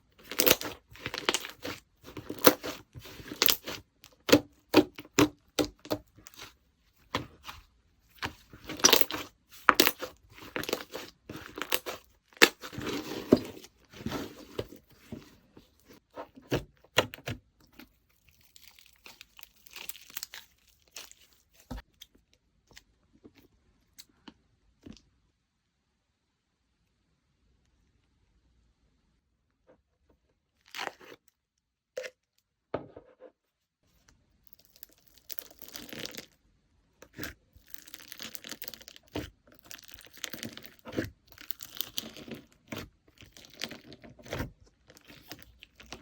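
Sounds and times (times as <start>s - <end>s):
slime popping and crackling: 0.2s - 6.5s, 8.3s - 14.4s, 18.2s - 21.3s, 34.5s - 36.4s, 37.1s - 46.0s.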